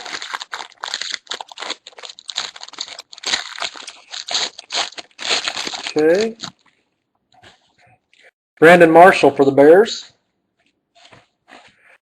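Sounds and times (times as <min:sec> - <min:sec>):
wrapper tearing and crinkling: 0:00.0 - 0:06.7.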